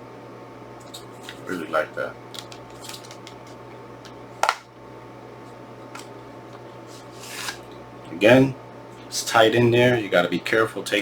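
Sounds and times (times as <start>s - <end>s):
steady low hum: 0.0s - 11.0s
case taps and rustles: 4.4s - 4.6s.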